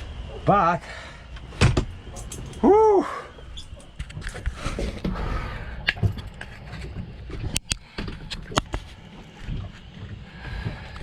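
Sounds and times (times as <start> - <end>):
steady low rumble: 0.0 - 11.0
man exclaiming whew: 2.6 - 3.3.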